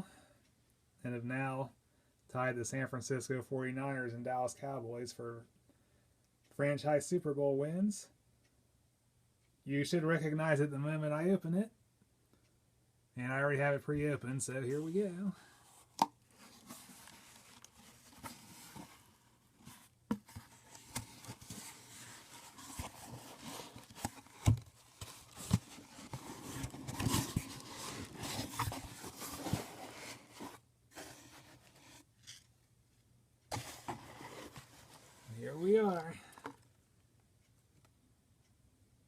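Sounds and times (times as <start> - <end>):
cardboard box rustling and scraping: 15.6 - 32.4, 33.5 - 35.4.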